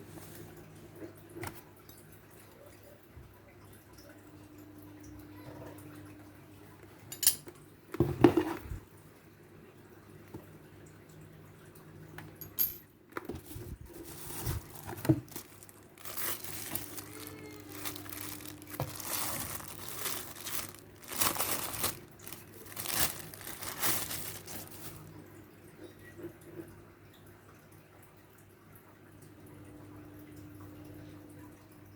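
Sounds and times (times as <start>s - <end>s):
packaging crinkling and rustling: 13.3s - 25.1s.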